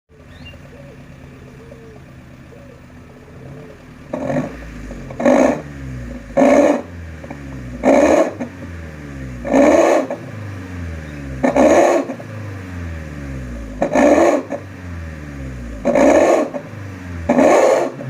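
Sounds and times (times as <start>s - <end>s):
car engine idling: 0.1s - 18.0s
engine revving: 3.2s - 18.0s.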